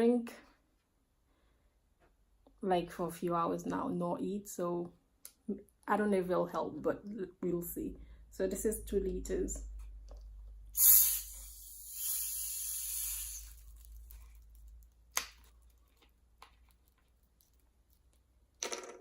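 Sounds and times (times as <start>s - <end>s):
plastic soda bottle hissing open: 10.8s - 14.4s.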